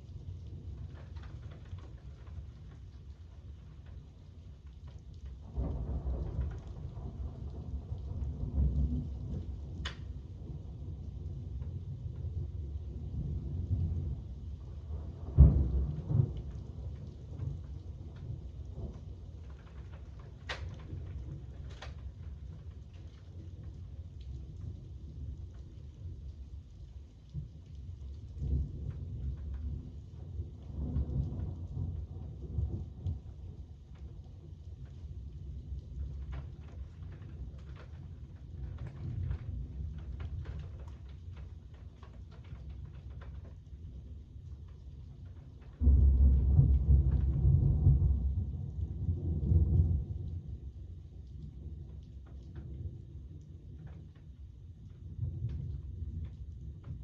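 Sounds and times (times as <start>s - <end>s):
low thunder rumble: 0.0s - 57.0s
steady rain: 0.0s - 57.0s.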